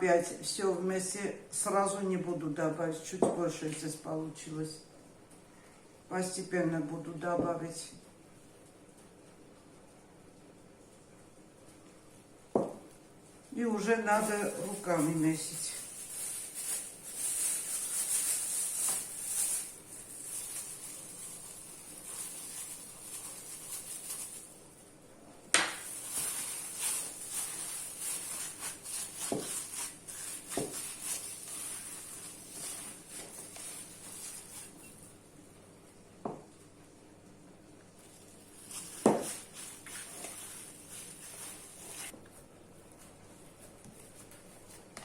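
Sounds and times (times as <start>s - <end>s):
hands kneading dough: 25.6s - 35.0s, 37.9s - 45.0s.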